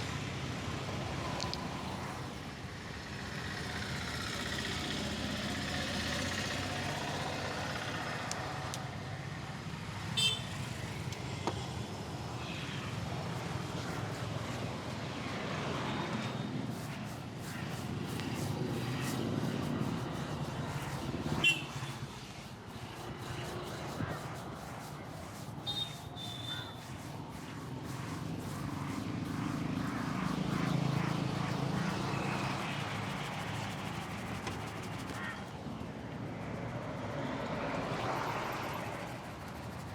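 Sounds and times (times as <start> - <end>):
traffic rumble: 0.0 - 39.9.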